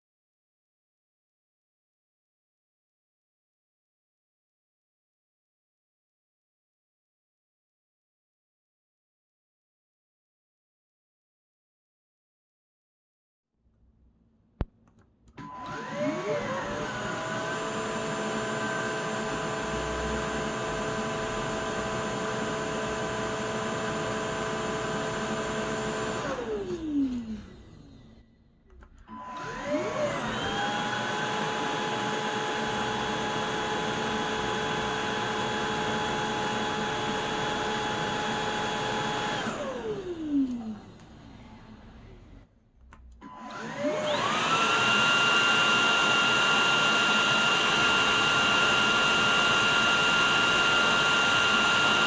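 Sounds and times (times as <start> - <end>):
vacuum motor whining: 15.4 - 42.5, 43.2 - 52.0.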